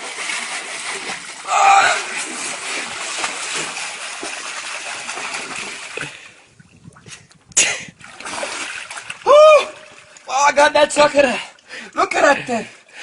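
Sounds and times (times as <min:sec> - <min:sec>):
sharp splash: 0:00.0 - 0:06.2, 0:08.0 - 0:10.3
water splashing and churning: 0:00.0 - 0:13.0.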